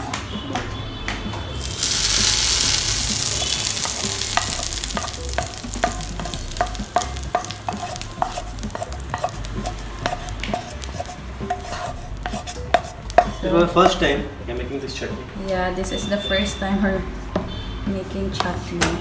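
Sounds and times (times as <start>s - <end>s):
hot oil sizzling: 1.5s - 14.5s.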